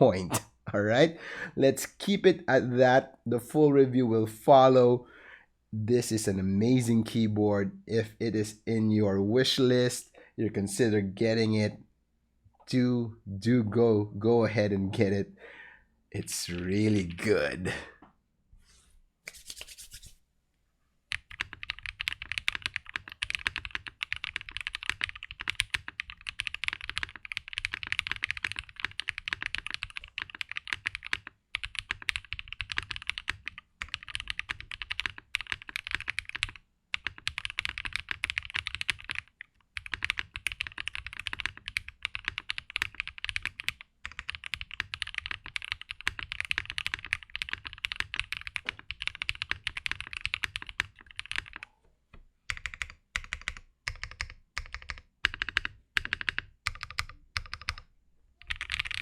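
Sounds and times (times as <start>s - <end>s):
mechanical keyboard typing: 21.1s - 51.7s, 52.5s - 59.0s.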